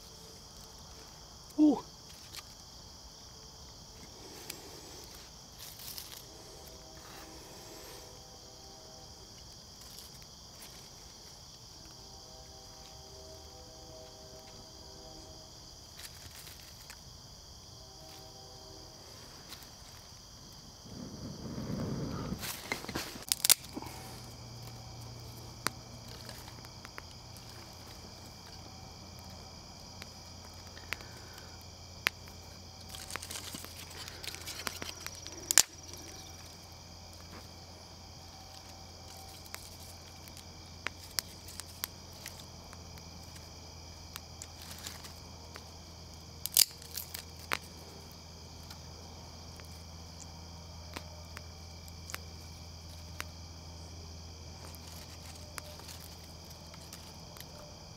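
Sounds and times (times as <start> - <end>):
crickets chirring: 0.0 - 57.9.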